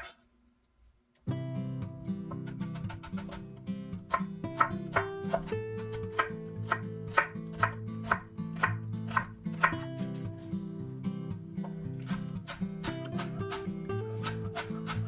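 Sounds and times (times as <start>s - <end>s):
knife chopping on cutting board: 4.1s - 9.9s, 11.6s - 15.0s.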